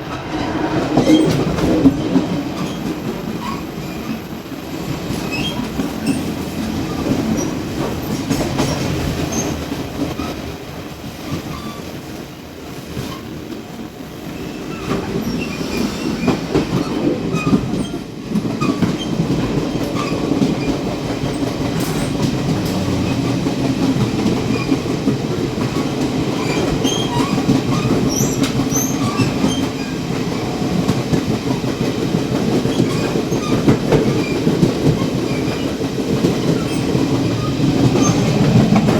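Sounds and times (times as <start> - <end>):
train wheels rumbling on rails: 0.0 - 38.9.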